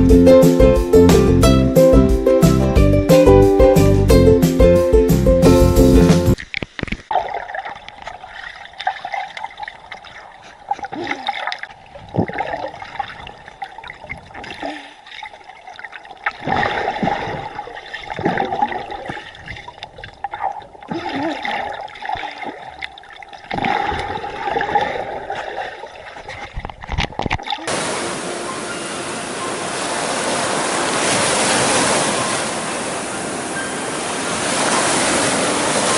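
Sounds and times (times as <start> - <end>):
running water gurgling: 6.4 - 35.9
waterfall rushing: 27.7 - 35.9.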